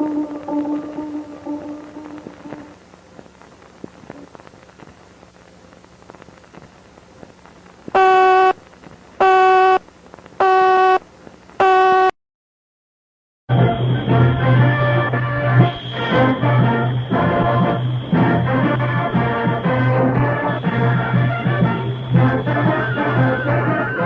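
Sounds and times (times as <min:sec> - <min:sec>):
crackling static hiss: 0:00.0 - 0:12.2, 0:13.5 - 0:24.0
buzzy electronic beeps: 0:08.0 - 0:08.6, 0:09.2 - 0:09.8, 0:13.5 - 0:24.0
held electronic tone: 0:08.0 - 0:08.6, 0:09.2 - 0:09.8, 0:13.5 - 0:24.0.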